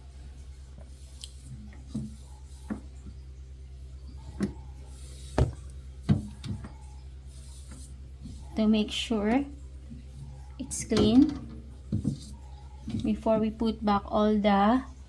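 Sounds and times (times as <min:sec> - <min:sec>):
steady low hum: 0:00.0 - 0:15.0
light knocks on shelves: 0:05.4 - 0:06.7.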